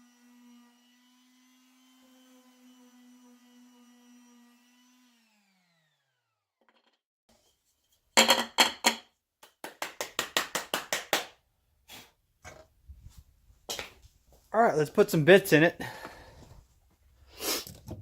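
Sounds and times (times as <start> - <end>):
electric sander winding down: 1.1 - 6.5.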